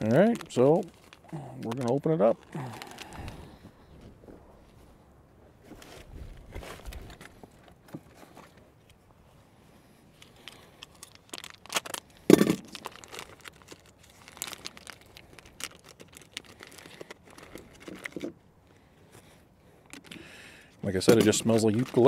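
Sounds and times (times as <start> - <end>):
plastic packet tearing and crinkling: 0.0 - 3.6, 10.2 - 18.4, 21.0 - 22.0.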